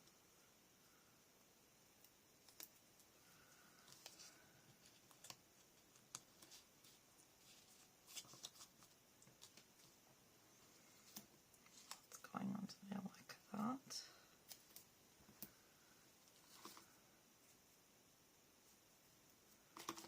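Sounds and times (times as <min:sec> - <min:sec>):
paper and chipboard rustling: 0:03.8 - 0:10.0.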